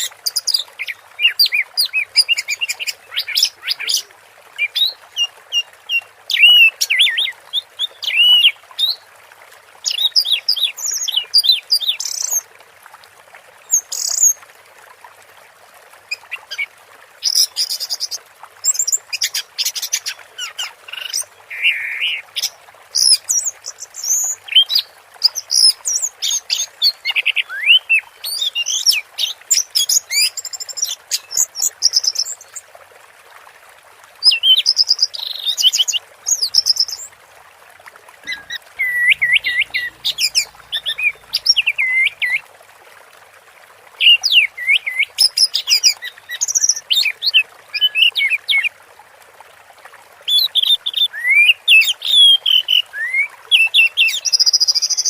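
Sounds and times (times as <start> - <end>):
thrush singing: 38.3 - 42.1.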